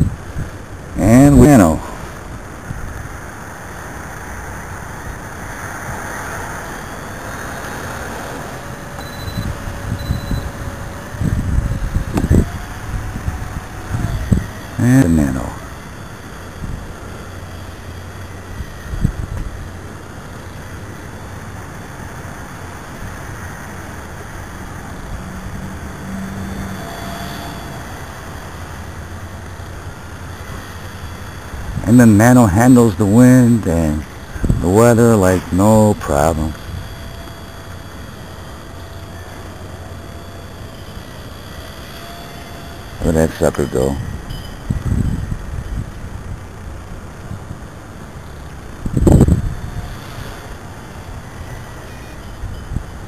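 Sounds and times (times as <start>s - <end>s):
gusty wind on microphone: 0.0s - 32.0s, 34.0s - 34.9s, 44.0s - 53.0s
faint brief whine: 5.9s - 16.6s, 24.6s - 29.7s, 49.0s - 53.0s.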